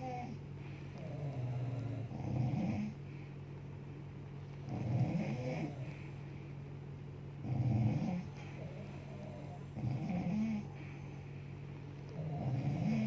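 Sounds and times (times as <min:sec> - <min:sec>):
woman snoring: 0:00.0 - 0:00.4, 0:01.0 - 0:03.0, 0:04.7 - 0:06.0, 0:07.4 - 0:10.9, 0:12.2 - 0:13.0
steady low hum: 0:00.0 - 0:13.0.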